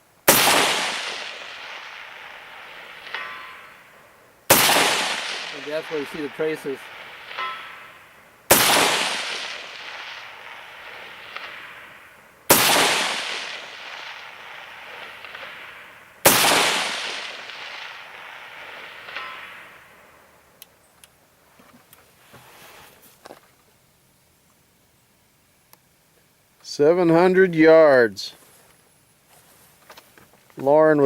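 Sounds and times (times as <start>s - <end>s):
rifle shots with echo: 0.3s - 20.0s.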